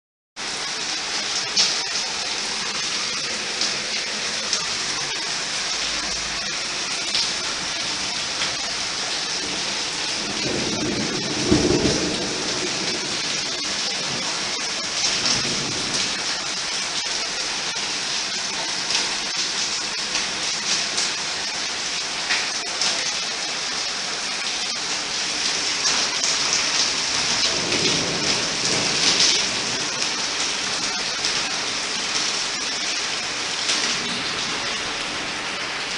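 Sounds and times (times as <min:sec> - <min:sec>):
rain falling: 0:00.4 - 0:35.9
thunder rumble: 0:06.2 - 0:16.8, 0:26.7 - 0:34.7.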